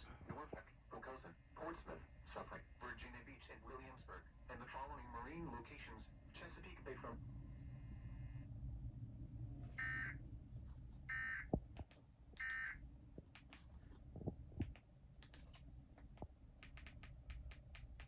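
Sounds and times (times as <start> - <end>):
low hum: 0.0 - 18.0
faint scattered clicks: 11.6 - 14.0, 14.6 - 18.0.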